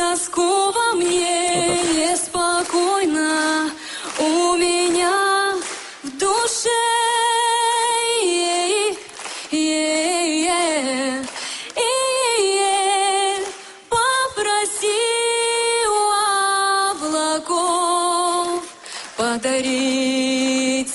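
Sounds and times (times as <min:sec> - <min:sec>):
woman singing a cappella: 0:00.0 - 0:20.9
short breaths: 0:03.8 - 0:04.2, 0:11.4 - 0:11.8, 0:18.8 - 0:19.2.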